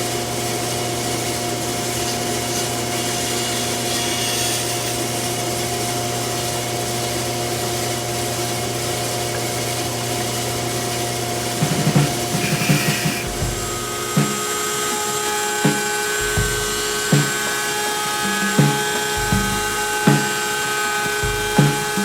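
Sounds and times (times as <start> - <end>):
cnc router cutting wood: 0.0 - 22.0
low knocks: 18.6 - 20.4.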